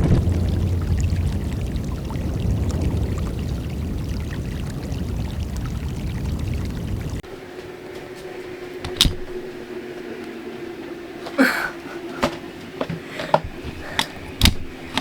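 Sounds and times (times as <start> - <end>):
low rumble: 0.0 - 7.2
water lapping around boat hull: 0.0 - 7.2.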